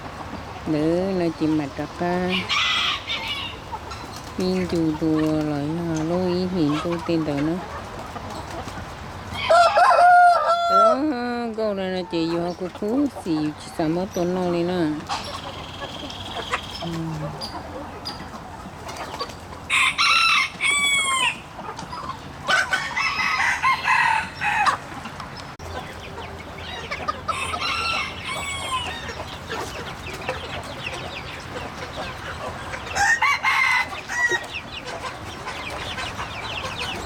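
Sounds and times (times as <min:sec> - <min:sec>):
chickens clucking: 0:00.0 - 0:37.0
roosters crowing: 0:02.1 - 0:04.2, 0:08.1 - 0:11.4, 0:19.0 - 0:37.0.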